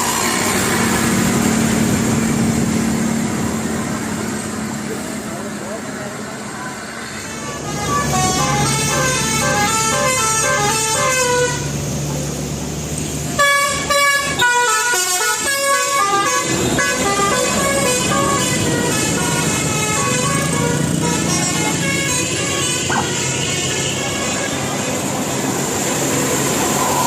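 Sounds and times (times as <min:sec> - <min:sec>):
loud air horn blasts: 0:07.2 - 0:11.7, 0:13.4 - 0:25.1
musical air horn melodies: 0:07.3 - 0:11.7, 0:13.4 - 0:24.9.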